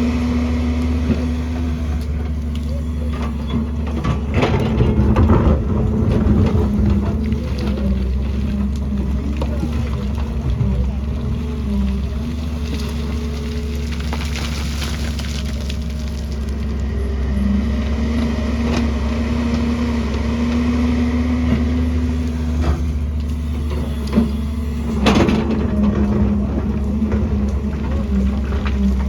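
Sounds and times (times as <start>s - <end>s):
excavator diesel engine running: 0.0s - 29.0s
excavator knocking while digging: 3.1s - 11.7s.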